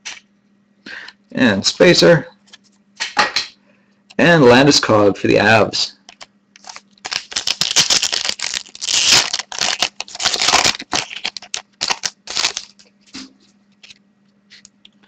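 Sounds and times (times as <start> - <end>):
foil wrapper tearing and crinkling: 6.1 - 12.9.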